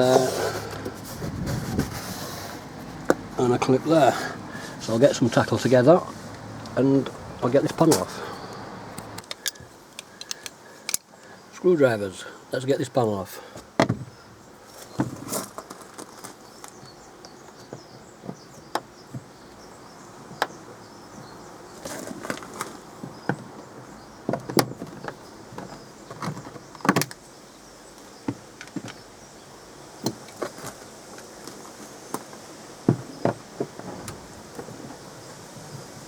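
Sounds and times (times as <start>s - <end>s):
plastic clips prying: 9.0s - 11.1s
screwdrivers clicking and scraping: 9.0s - 11.1s.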